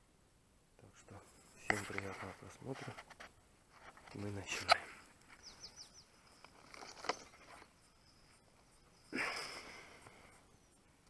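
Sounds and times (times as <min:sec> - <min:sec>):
handling rustle: 0:01.1 - 0:09.1
bird chirping: 0:04.0 - 0:11.0.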